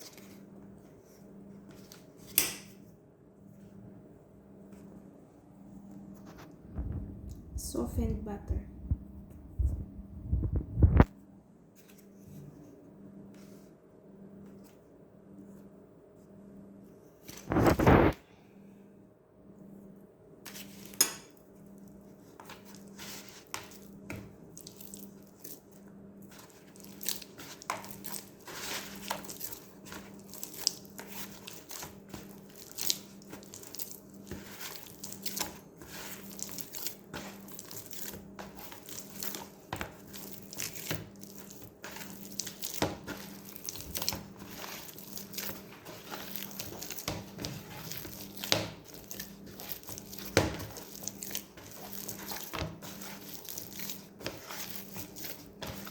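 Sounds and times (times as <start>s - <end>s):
hands kneading sticky dough: 0.0s - 2.9s, 19.8s - 55.9s.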